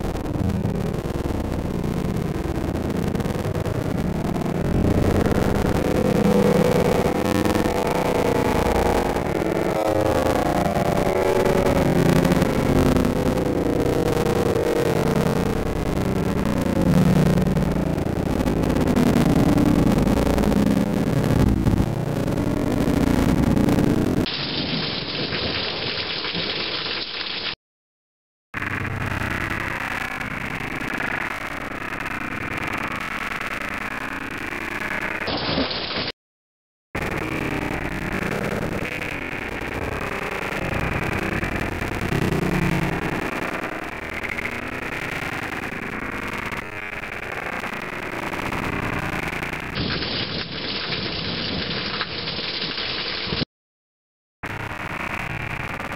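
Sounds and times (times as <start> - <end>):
heavy rain hissing: 24.3 - 27.6, 49.8 - 53.4
thunder rumbling: 40.6 - 43.3.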